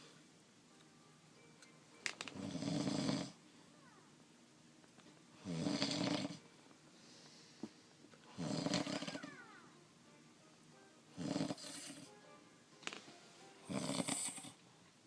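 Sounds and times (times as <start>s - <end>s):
man snoring: 2.4s - 3.4s, 5.4s - 6.4s, 8.3s - 9.3s, 11.2s - 12.1s, 13.6s - 14.6s.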